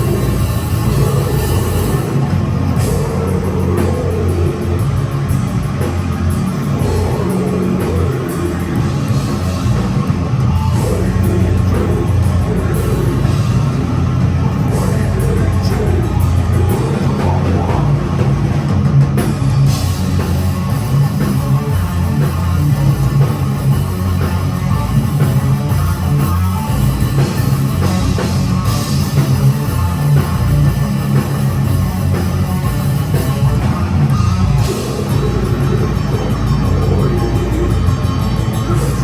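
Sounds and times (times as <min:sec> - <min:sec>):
bass guitar: 0:00.0 - 0:39.0
distorted electric guitars: 0:00.0 - 0:39.0
drum kit: 0:00.0 - 0:39.0.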